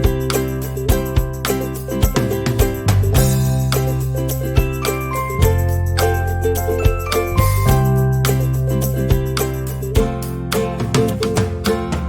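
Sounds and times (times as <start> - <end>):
upbeat background music: 0.0 - 12.0
bright jingling tones: 0.3 - 10.0.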